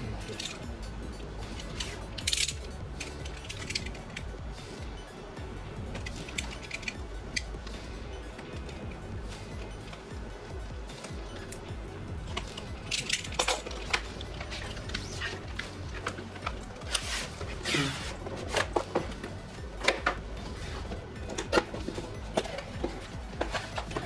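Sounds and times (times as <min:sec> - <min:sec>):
faint background music: 0:00.0 - 0:24.0
packaging clicks and crinkling: 0:12.3 - 0:24.0.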